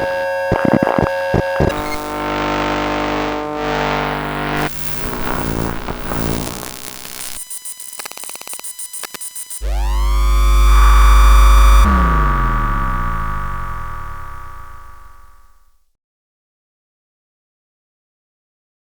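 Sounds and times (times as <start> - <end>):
rapid clicking pulses: 0.0 - 2.5, 4.2 - 10.4
crackling buzz: 0.0 - 15.8
hum with many overtones: 0.0 - 15.8
tone sweeping up in pitch: 9.6 - 15.6
loud low hum: 9.6 - 15.7.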